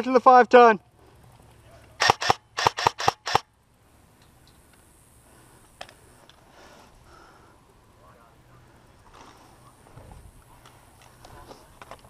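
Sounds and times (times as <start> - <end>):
airsoft gun shots: 2.0 - 3.5.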